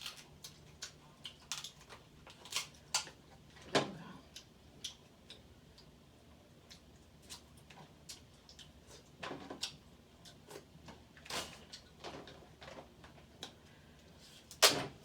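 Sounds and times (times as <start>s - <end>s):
crab shells cracking: 0.0s - 3.2s.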